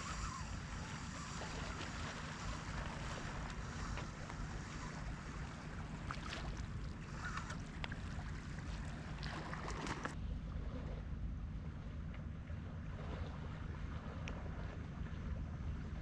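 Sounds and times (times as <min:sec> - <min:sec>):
seawater washing at shore: 0:00.0 - 0:11.0
wind rumbling on microphone: 0:00.0 - 0:16.0.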